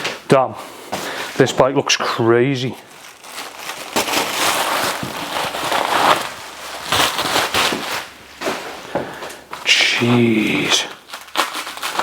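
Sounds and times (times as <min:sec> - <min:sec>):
packaging crumpling rustle: 0:02.4 - 0:12.0.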